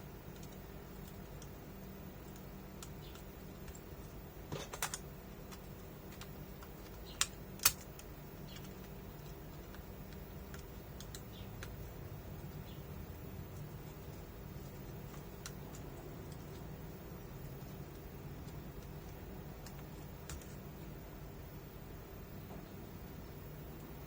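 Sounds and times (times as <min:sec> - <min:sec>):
low steady hum: 0:00.0 - 0:24.0
laptop clicks and taps: 0:04.6 - 0:11.8.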